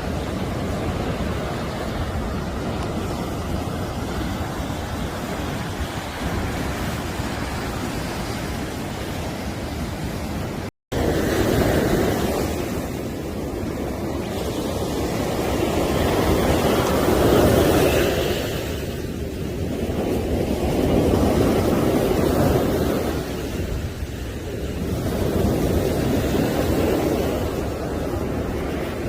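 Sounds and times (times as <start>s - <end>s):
waves breaking on a beach: 0.0s - 29.0s.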